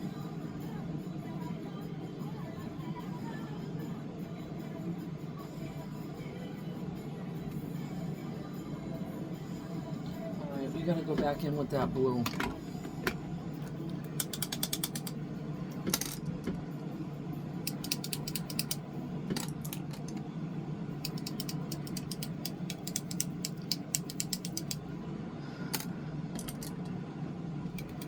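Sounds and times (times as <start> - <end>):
makeup brush tapping palette: 21.0 - 24.8.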